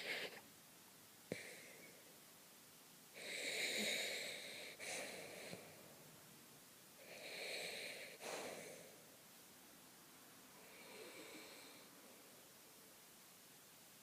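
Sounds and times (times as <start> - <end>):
dog snoring: 10.6 - 11.9.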